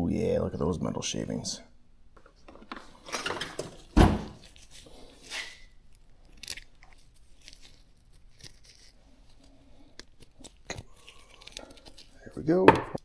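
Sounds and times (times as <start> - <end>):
rustling: 2.2 - 13.0
heavy thump: 12.7 - 13.0.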